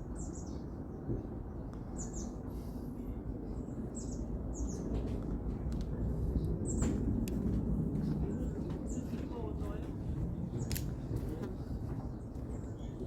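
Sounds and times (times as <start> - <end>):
small birds chirping: 0.0 - 2.8, 3.5 - 5.0, 8.3 - 9.8.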